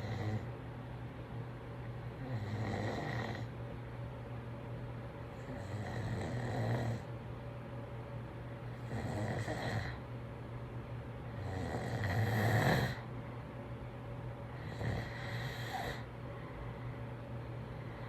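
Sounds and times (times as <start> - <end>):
snoring: 0.0 - 0.5, 2.2 - 3.5, 5.4 - 7.1, 8.8 - 10.0, 11.4 - 13.1, 14.6 - 16.1
steady low hum: 0.0 - 18.0.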